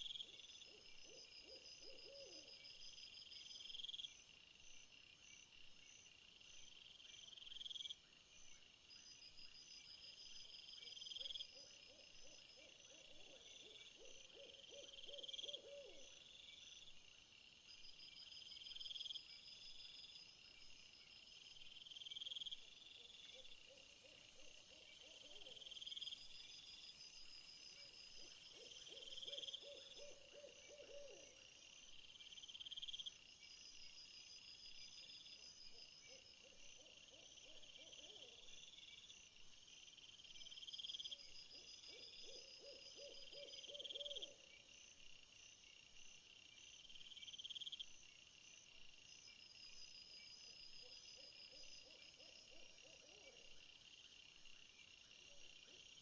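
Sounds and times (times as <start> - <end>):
insects chirping: 0.0 - 56.0
high steady insect buzz: 13.5 - 56.0.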